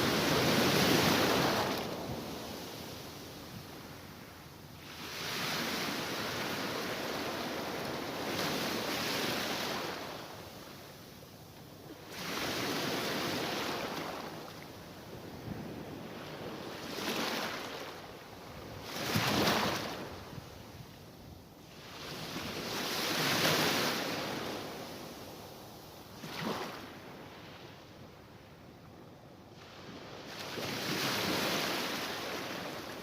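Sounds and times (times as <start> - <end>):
sea waves surf: 0.0 - 10.4, 16.0 - 20.3, 29.6 - 33.0.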